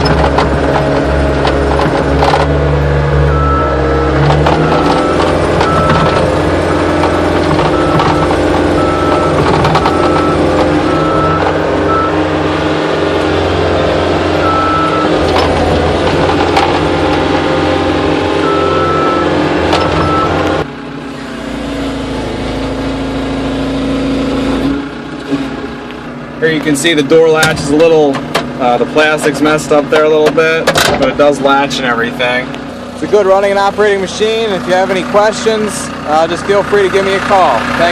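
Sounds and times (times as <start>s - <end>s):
machine knocks and clanks: 0.0s - 2.6s, 4.2s - 11.6s, 14.9s - 17.4s, 29.9s - 31.2s
diesel engine running hard: 0.0s - 37.9s
back-up alarm beeping: 3.2s - 6.2s, 7.6s - 12.3s, 14.4s - 15.2s, 18.4s - 20.6s.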